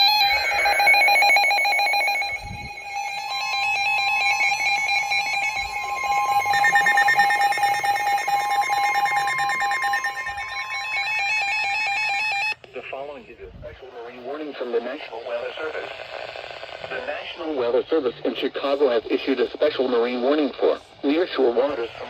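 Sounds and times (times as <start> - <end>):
steady warning alarm tone: 0.0 - 12.6
warbling electronic beeps: 0.0 - 12.6.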